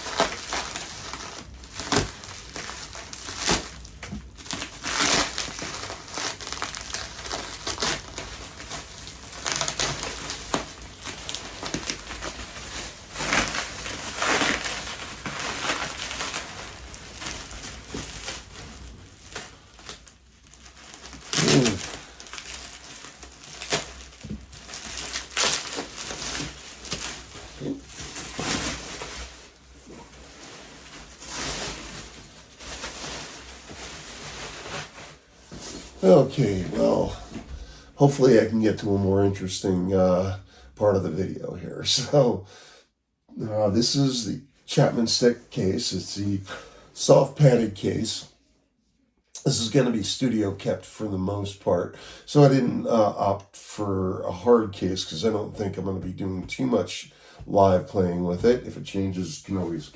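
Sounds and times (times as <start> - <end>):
bubble wrap crinkling: 0.0 - 38.9.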